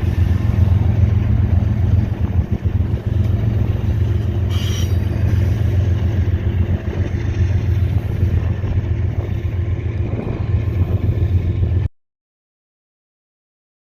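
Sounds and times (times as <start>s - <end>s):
train rumbling: 0.0s - 11.9s.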